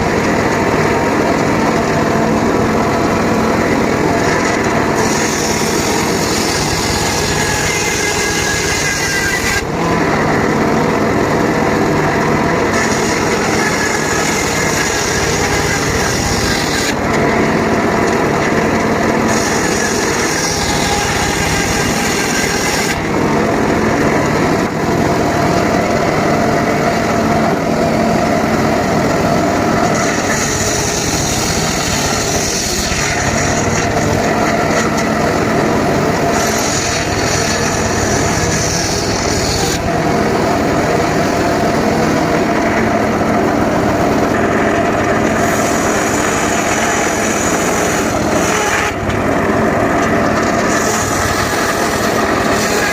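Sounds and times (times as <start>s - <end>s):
circular saw motor hum: 0.0s - 52.9s
saw cutting wood hiss: 5.0s - 9.9s, 19.2s - 23.1s, 29.8s - 34.2s.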